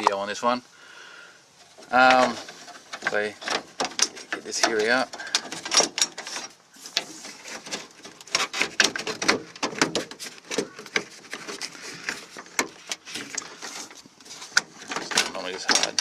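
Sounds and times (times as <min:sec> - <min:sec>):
clicks and knocks of door trim: 0:03.0 - 0:11.6.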